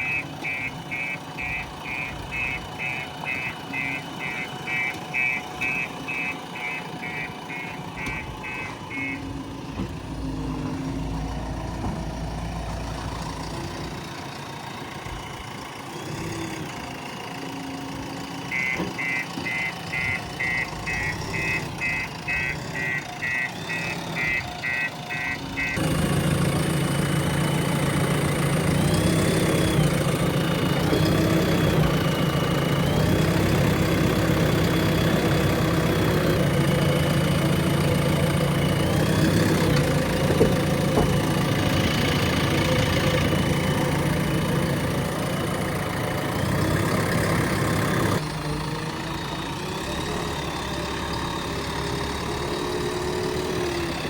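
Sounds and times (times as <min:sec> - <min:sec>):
reversing alarm beeping: 0:00.0 - 0:09.3, 0:18.5 - 0:26.0
diesel engine running: 0:00.0 - 0:54.0.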